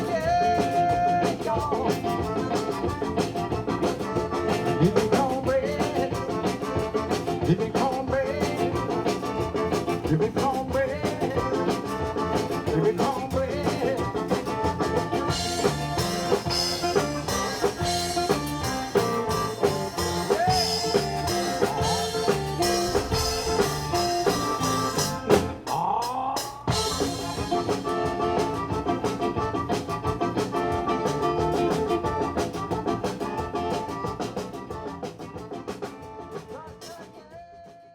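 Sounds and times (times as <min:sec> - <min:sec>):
instrumental band music with drums: 0:00.0 - 0:37.9.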